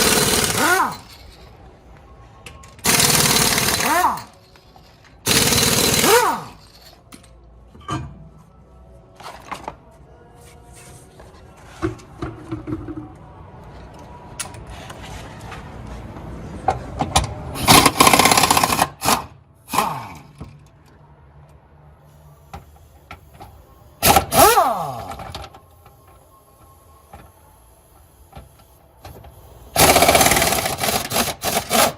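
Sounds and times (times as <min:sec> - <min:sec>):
impact wrench whirring: 0:00.0 - 0:01.1, 0:02.8 - 0:04.4, 0:05.3 - 0:06.6, 0:24.0 - 0:25.2, 0:29.8 - 0:31.9.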